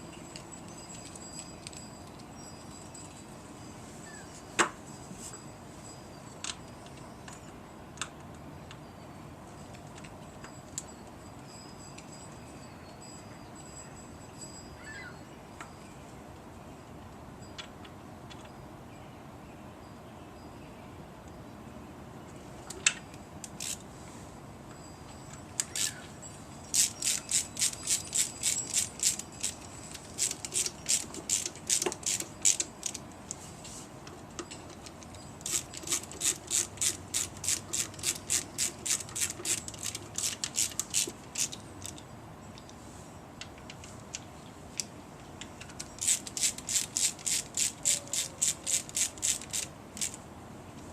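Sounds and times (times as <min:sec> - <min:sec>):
hand ratchet clicking: 0:23.4 - 0:23.8, 0:25.6 - 0:26.0, 0:26.7 - 0:33.4, 0:34.4 - 0:42.0, 0:45.7 - 0:50.2.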